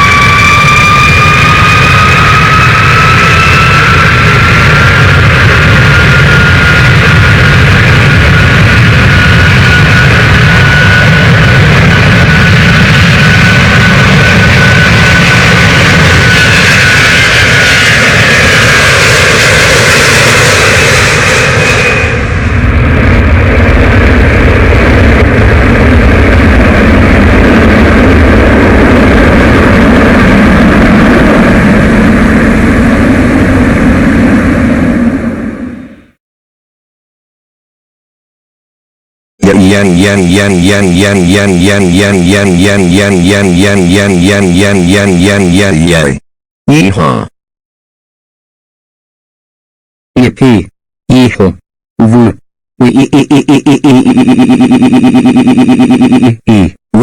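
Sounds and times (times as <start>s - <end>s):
high engine whine: 0.0s - 36.1s, 39.4s - 46.2s, 53.4s - 56.4s
jet engines rumbling: 0.0s - 36.1s, 39.4s - 46.2s.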